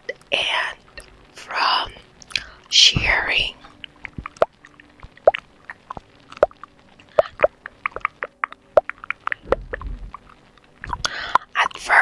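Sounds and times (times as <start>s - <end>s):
wet mouth clicks and pops: 2.2s - 2.5s, 3.8s - 11.5s.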